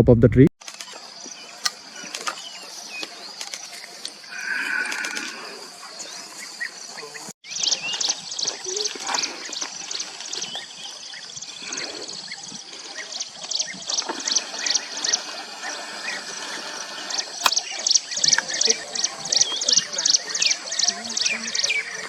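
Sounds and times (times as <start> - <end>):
flock of birds calling: 0.7 - 22.0.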